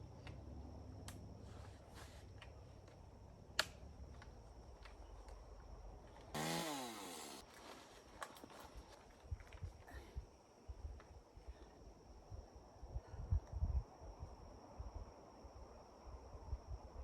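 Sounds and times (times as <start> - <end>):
chainsaw idling and revving: 6.3 - 7.4.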